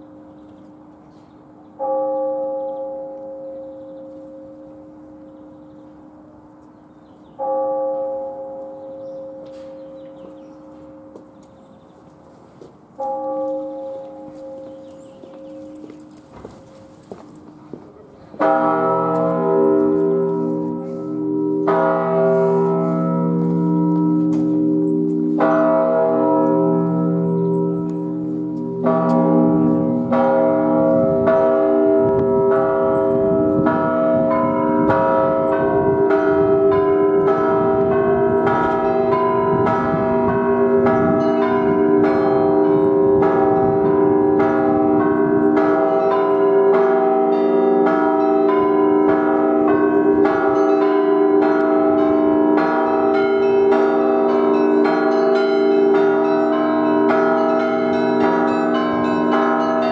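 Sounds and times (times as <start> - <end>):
large bells ringing: 0.0 - 59.9.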